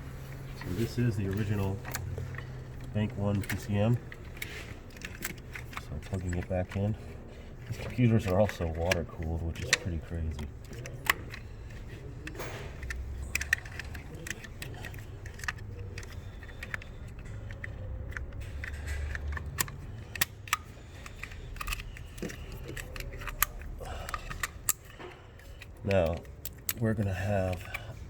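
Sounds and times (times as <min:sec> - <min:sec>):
steady low hum: 0:00.0 - 0:28.0
connector clicks and rattles: 0:00.2 - 0:28.0.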